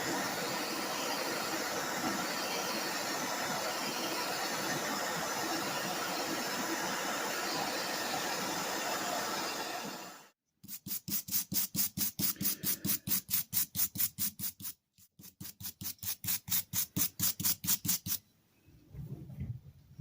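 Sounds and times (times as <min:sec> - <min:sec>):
steady hissing: 0:00.0 - 0:13.6.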